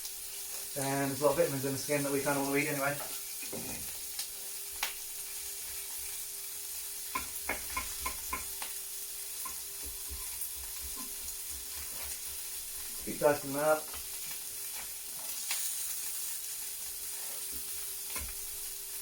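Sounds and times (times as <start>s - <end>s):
food sizzling in a pan: 0.0s - 19.0s
knife chopping on a board: 7.1s - 8.6s, 9.5s - 12.5s.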